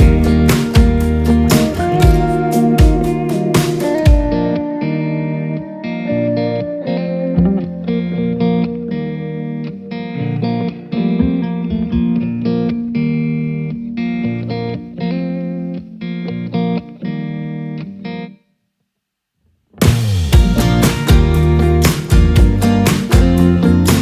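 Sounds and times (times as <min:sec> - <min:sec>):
guitar background music: 0:00.0 - 0:18.4, 0:19.8 - 0:24.0.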